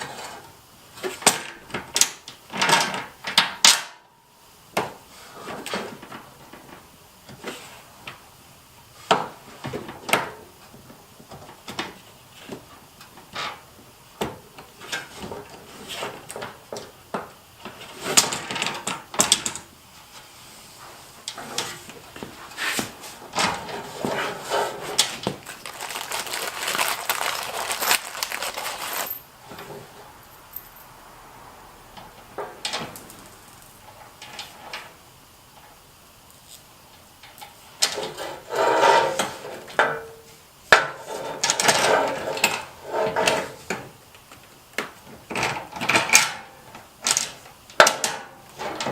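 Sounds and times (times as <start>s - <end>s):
small parts clicking and clinking: 25.6s - 29.2s.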